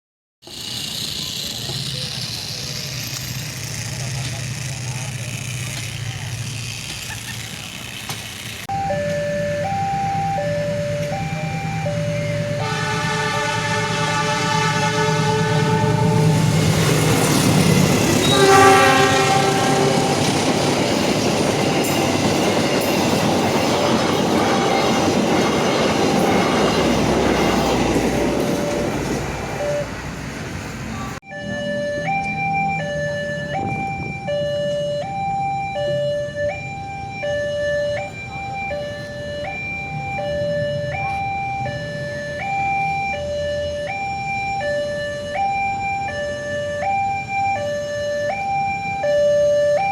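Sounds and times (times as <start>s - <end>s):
train wheels rushing on rails: 0.4s - 49.9s
train horn blasts: 8.7s - 16.9s, 17.6s - 20.6s, 24.3s - 25.2s
two-tone crossing alarm chimes: 8.7s - 30.2s, 31.2s - 49.9s.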